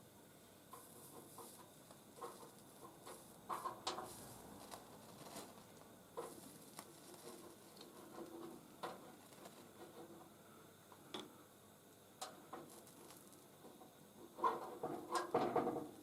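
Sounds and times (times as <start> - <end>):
low hiss: 0.0 - 16.0
soldering clicks and crackles: 0.7 - 10.0, 11.9 - 13.6.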